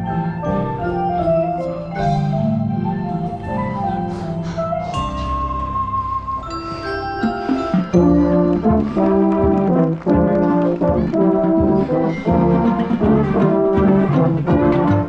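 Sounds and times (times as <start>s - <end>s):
brass section accented chords: 7.5s - 15.0s.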